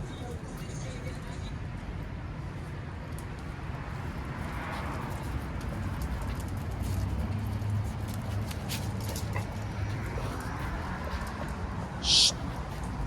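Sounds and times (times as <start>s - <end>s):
faint ticks and scuffs: 12.0s - 12.3s.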